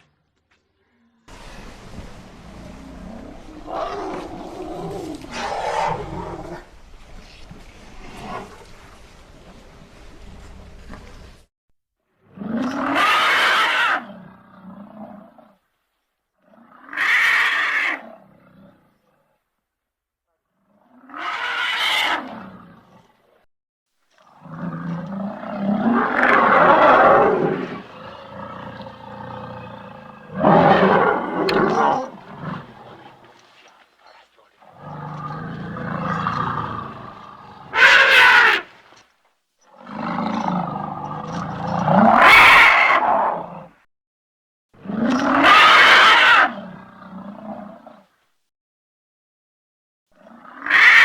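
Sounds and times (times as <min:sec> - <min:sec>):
elephant roaring: 0:01.3 - 0:06.8, 0:24.3 - 0:39.0, 0:39.8 - 0:43.8.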